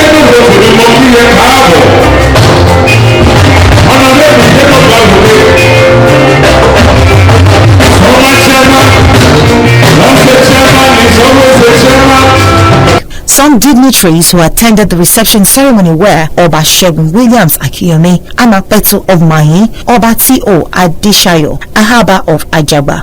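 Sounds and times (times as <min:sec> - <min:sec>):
band playing juju music: 0:00.0 - 0:13.0
person singing: 0:03.7 - 0:13.0.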